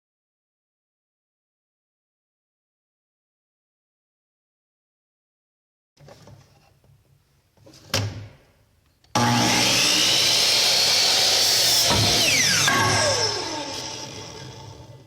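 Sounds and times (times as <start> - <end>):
power tool whining: 9.2 - 15.0.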